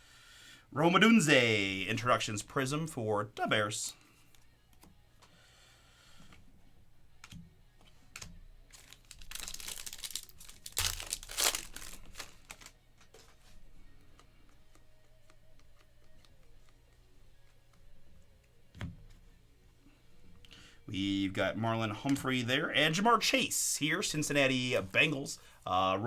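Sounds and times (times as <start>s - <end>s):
cards clicking and tapping: 7.2s - 17.8s
foil wrapper crinkling and tearing: 8.7s - 13.4s.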